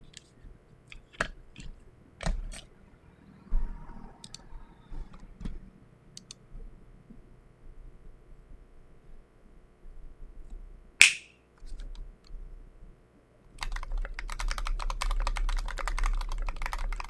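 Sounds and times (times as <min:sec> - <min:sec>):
mechanical keyboard keystroke clicks: 0:13.6 - 0:17.0.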